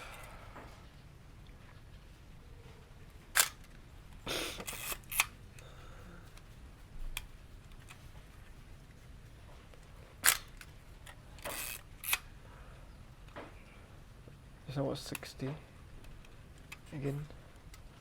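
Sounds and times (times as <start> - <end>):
camera shutter clack: 3.4 - 3.7, 4.6 - 5.4, 10.2 - 10.7, 11.4 - 12.3
film advance winding rasp: 4.6 - 5.4, 11.4 - 12.2.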